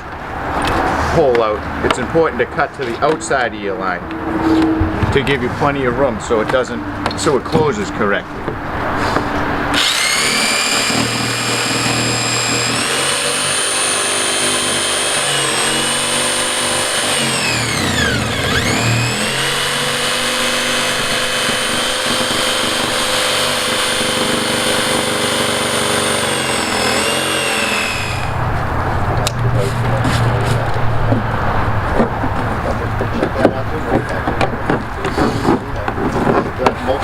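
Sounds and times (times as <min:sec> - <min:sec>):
electric power saw cutting plastic: 0:09.7 - 0:28.5.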